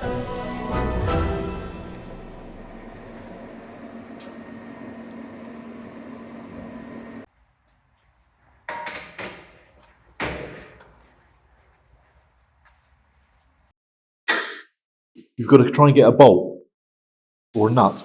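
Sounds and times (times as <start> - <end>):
background music: 0.0 - 3.6.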